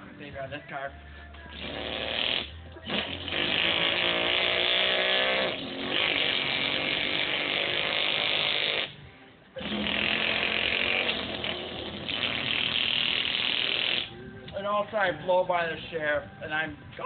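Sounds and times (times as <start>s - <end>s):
man imitating truck engine: 9.6s - 14.1s.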